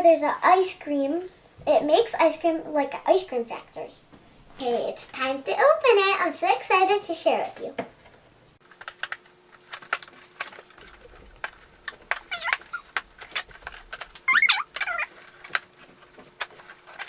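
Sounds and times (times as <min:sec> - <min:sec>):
plastic packaging clicking and crackling: 0:08.6 - 0:17.0
short squeaky gliding sounds: 0:12.3 - 0:13.0, 0:14.3 - 0:15.1.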